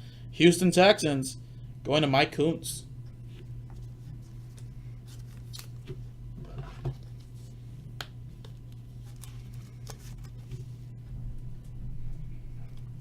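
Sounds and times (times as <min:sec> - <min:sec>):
steady low hum: 0:00.0 - 0:13.0
trading cards being handled: 0:03.3 - 0:10.9.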